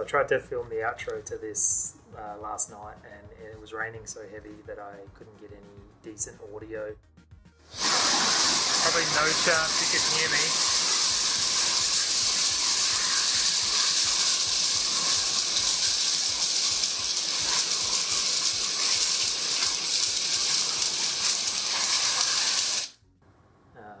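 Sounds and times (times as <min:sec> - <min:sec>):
heavy rain pouring: 0:07.8 - 0:22.9.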